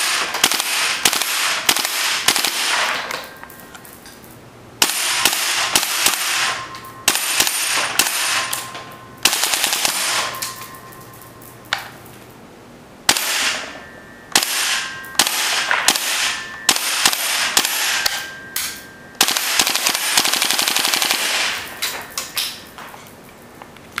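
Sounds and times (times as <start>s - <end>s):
airsoft rifle firing bursts: 0.0s - 3.0s, 4.8s - 8.6s, 9.2s - 10.3s, 14.4s - 18.2s, 19.2s - 21.6s.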